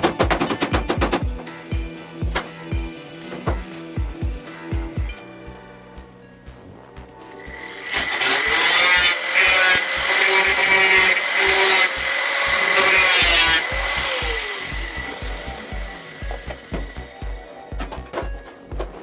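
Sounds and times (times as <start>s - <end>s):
power tool motor whine: 7.4s - 17.6s.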